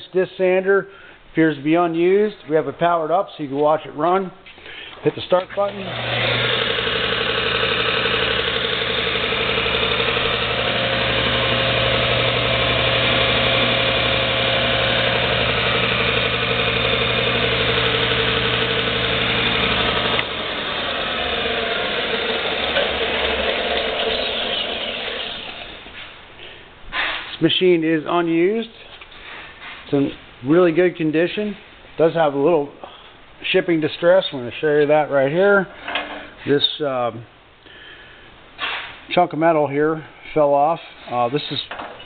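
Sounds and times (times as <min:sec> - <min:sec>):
sander motor hum: 0:05.3 - 0:26.0
whir of sanding belt and disc: 0:05.6 - 0:25.8.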